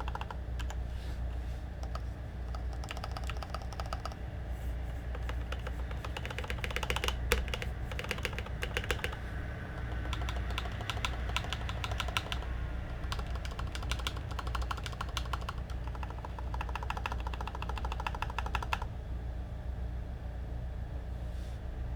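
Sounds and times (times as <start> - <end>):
mechanical keyboard key clacks: 0.0 - 0.8, 1.8 - 4.2, 5.0 - 18.9.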